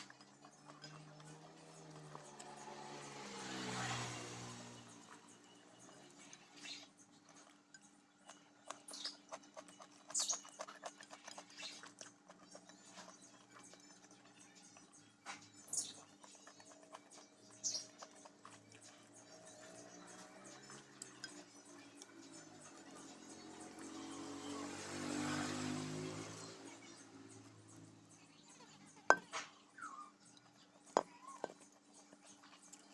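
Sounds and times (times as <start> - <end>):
wet chewing and lip smacking: 0.0 - 3.4, 5.0 - 24.8.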